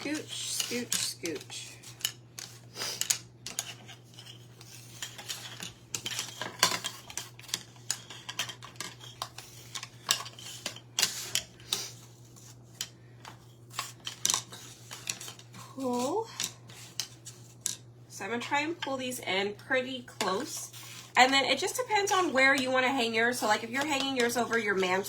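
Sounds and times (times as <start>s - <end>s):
dried slices clicking and rustling: 0.0s - 17.9s
low electrical hum: 0.0s - 25.0s.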